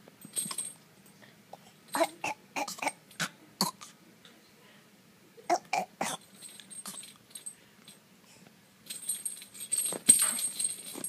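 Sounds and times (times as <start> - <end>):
baby coughing: 1.9 - 3.9, 5.5 - 6.2.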